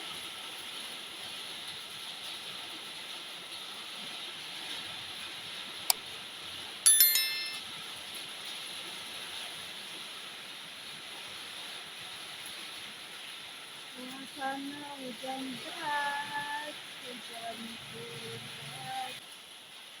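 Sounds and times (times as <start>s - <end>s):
metallic clang: 6.9s - 7.6s
heavy rain: 8.6s - 20.0s.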